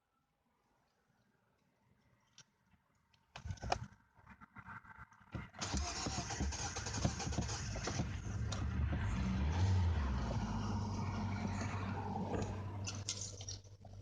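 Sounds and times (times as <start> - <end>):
engine cranking without starting: 5.6 - 10.7.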